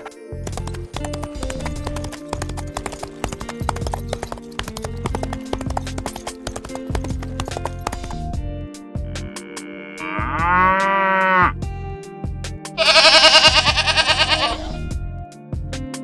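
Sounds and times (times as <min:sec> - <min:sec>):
horse hooves clip-clopping: 0:00.0 - 0:08.5, 0:12.8 - 0:14.8
background music with bass: 0:00.0 - 0:16.0.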